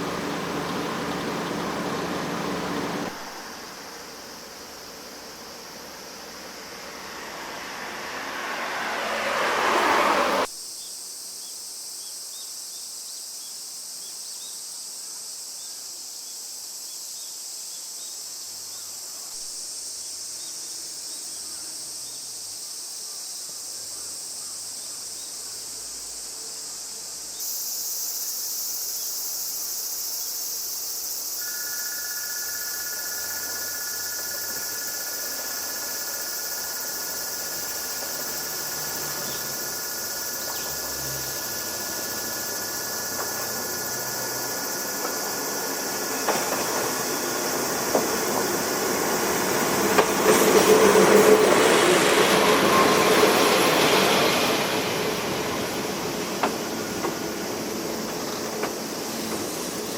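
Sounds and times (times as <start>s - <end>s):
high-pitched insect drone: 17.7s - 59.9s.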